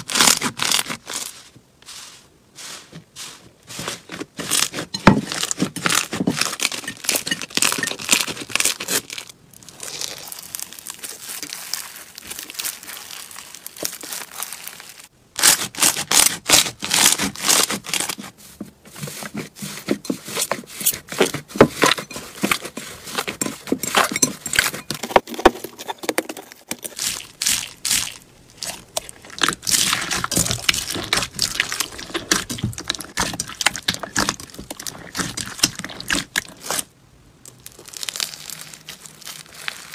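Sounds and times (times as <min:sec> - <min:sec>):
slime crackling and popping: 0:00.0 - 0:01.4, 0:04.4 - 0:18.2, 0:26.8 - 0:39.9
slime squishing: 0:00.0 - 0:25.2, 0:26.0 - 0:39.9.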